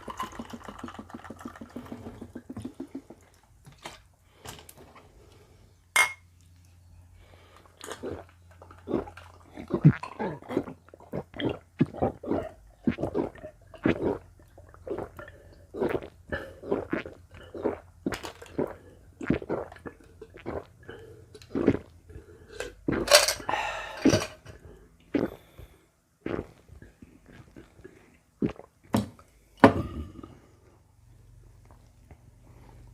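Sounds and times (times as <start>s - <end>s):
gulping and swallowing: 0.0s - 3.4s, 7.8s - 23.1s.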